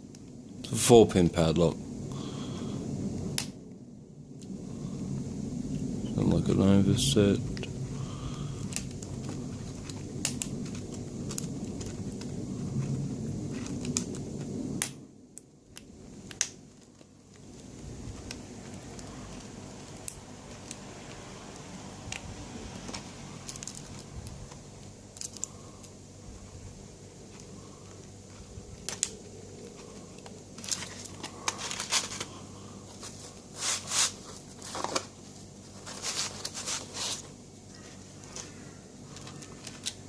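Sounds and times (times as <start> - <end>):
plastic packet crinkling: 28.0 - 37.4.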